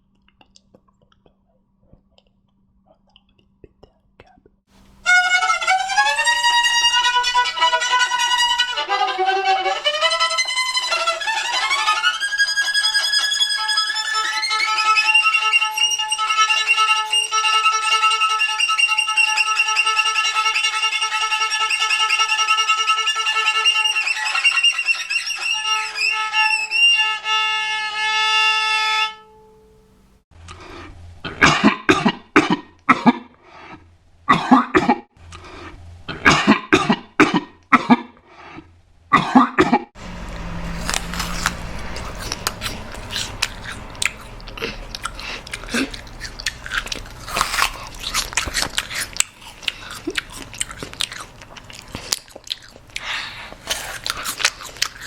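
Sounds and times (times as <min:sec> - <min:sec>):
scratchy violin playing: 0:05.0 - 0:29.9, 0:40.0 - 0:47.3
person crunching an apple: 0:30.4 - 0:31.0, 0:35.2 - 0:35.8, 0:40.0 - 0:55.0
person coughing wetly: 0:31.2 - 0:33.4, 0:34.3 - 0:35.1, 0:36.1 - 0:38.2, 0:39.1 - 0:39.9.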